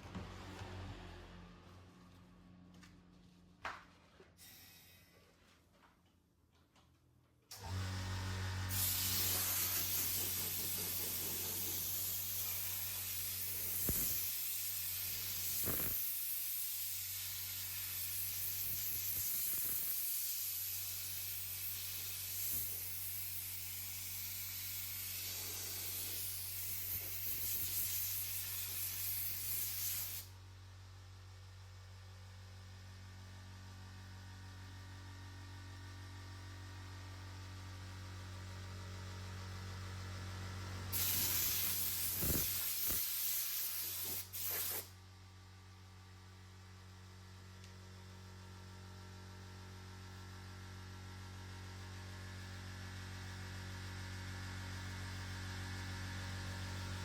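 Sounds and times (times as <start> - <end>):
compressed air hissing from air gun: 4.4 - 5.1, 8.7 - 30.3, 40.9 - 44.9.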